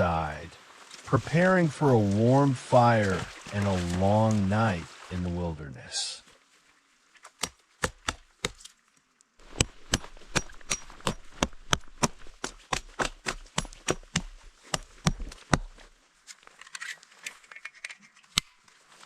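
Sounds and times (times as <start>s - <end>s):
wood cracking: 9.4s - 18.4s.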